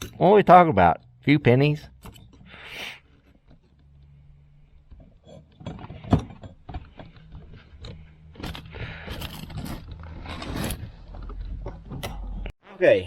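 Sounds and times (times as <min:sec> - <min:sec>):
rustling: 0:02.0 - 0:12.5.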